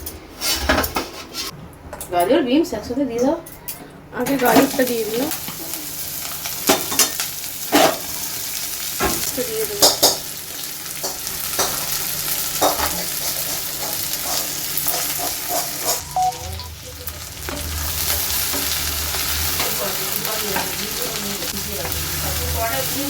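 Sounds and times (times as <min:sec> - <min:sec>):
spatula scraping a pan: 0:00.3 - 0:01.6, 0:12.6 - 0:16.1
vegetables sizzling in hot oil: 0:04.4 - 0:23.0
low hum: 0:16.0 - 0:20.3.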